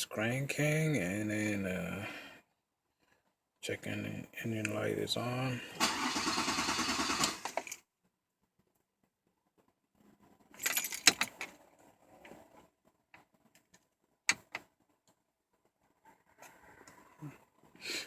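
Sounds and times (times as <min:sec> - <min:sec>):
car keys jangling: 0:10.6 - 0:11.5.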